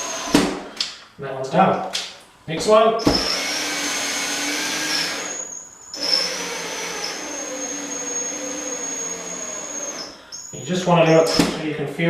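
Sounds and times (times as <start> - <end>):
cordless drill whining: 0.0 - 0.4, 3.1 - 10.5.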